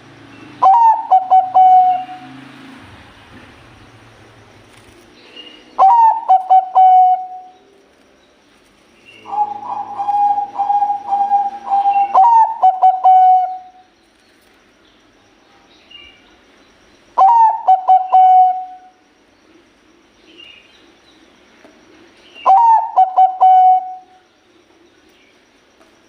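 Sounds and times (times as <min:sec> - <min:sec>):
dove cooing: 0:00.6 - 0:02.4, 0:05.6 - 0:07.6, 0:09.2 - 0:13.9, 0:17.2 - 0:19.0, 0:22.4 - 0:24.2.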